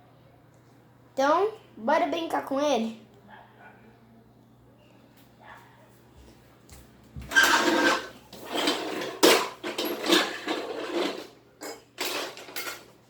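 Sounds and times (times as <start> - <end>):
plastic toy parts clattering: 7.4 - 13.0.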